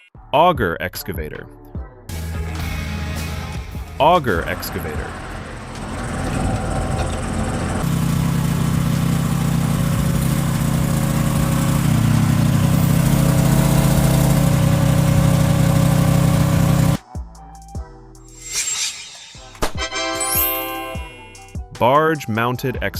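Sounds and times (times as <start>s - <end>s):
excavator engine droning: 2.1s - 17.0s.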